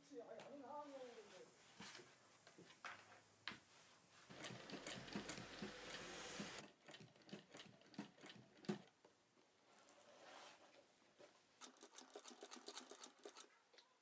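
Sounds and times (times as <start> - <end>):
sewing machine stitching: 4.3 - 8.9, 11.6 - 13.6.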